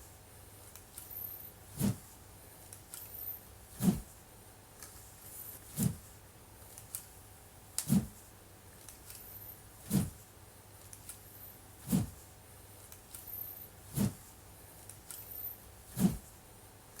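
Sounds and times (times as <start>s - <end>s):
wooden sword whooshing: 1.8s - 2.1s, 3.8s - 4.1s, 5.7s - 6.0s, 7.8s - 8.2s, 9.9s - 10.2s, 11.8s - 12.2s, 13.9s - 14.3s, 15.9s - 16.3s.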